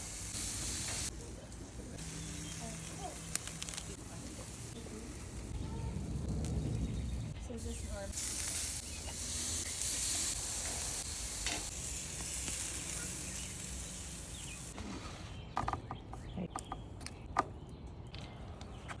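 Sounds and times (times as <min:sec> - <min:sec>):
seafood sizzling on grill: 0:00.0 - 0:14.8.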